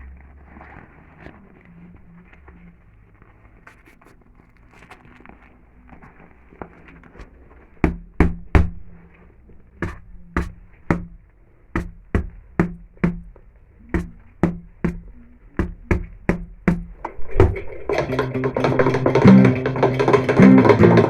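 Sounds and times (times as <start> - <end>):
knocking with low ring: 7.8 - 9.0, 9.8 - 21.0.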